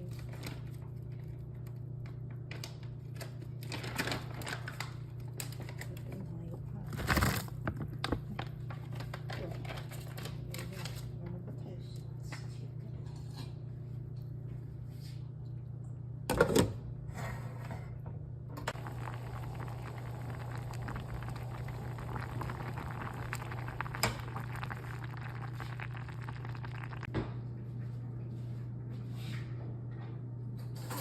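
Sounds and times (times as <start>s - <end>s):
steady low hum: 10.4s - 30.6s
crackling hiss of cooking: 18.7s - 27.1s.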